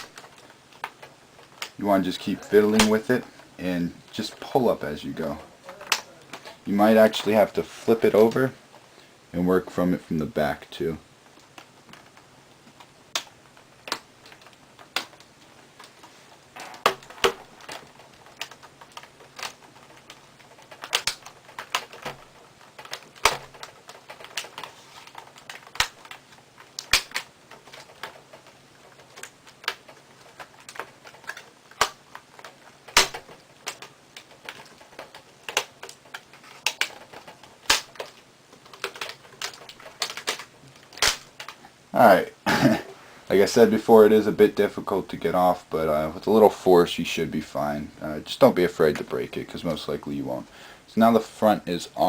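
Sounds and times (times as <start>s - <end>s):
plastic clips snapping loose: 16.6s - 22.2s, 25.3s - 28.2s, 29.1s - 41.6s.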